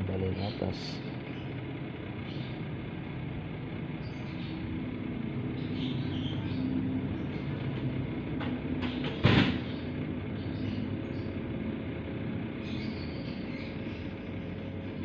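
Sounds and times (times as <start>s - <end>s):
loud knock: 8.8s - 9.7s.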